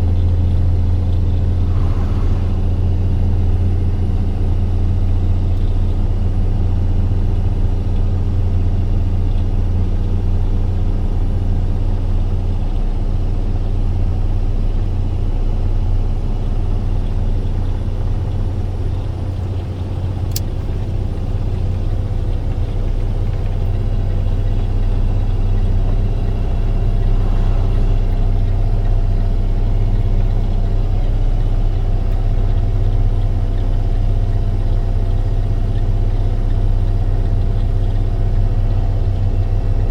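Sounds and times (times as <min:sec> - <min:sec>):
truck engine droning: 0:00.0 - 0:39.9
sharp click: 0:20.2 - 0:20.8.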